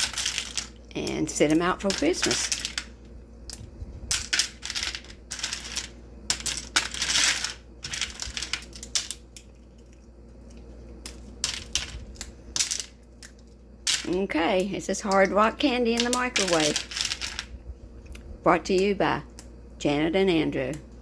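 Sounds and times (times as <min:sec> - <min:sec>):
hard candy clinking in a dish: 0:00.0 - 0:02.9, 0:11.0 - 0:17.5.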